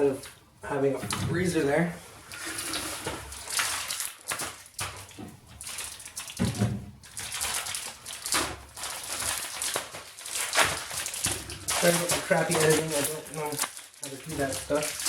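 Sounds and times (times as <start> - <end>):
items rustling and knocking in fridge: 4.4 - 15.0.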